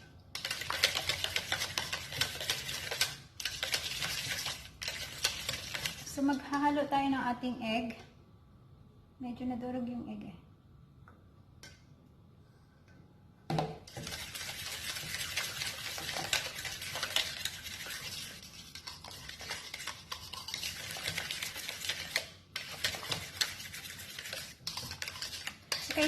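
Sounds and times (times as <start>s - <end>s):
utensil scraping and clicking in bowl: 0.3s - 6.7s, 13.9s - 26.0s.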